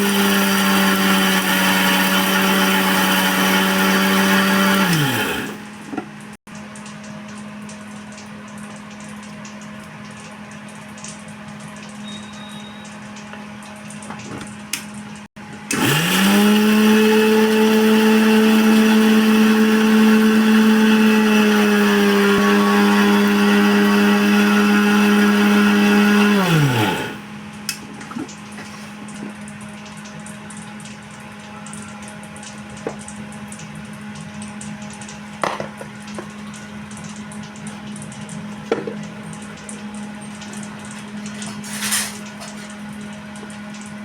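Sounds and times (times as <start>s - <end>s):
mixer grinder motor whining: 0.0s - 6.0s, 15.6s - 27.4s.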